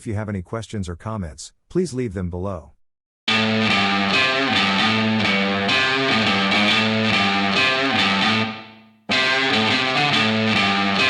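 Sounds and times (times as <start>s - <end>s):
guitar background music: 3.3s - 11.0s.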